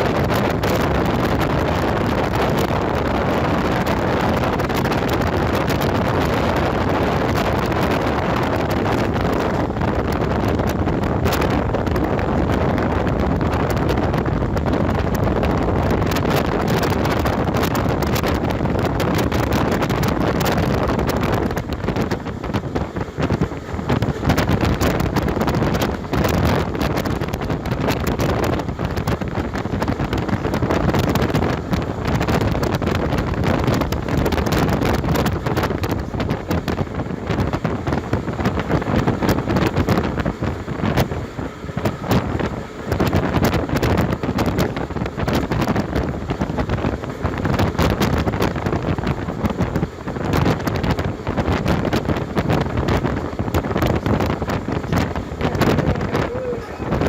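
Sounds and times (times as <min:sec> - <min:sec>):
diesel train rumbling and rattling: 0:00.0 - 0:57.0
wind buffeting microphone: 0:00.0 - 0:57.0.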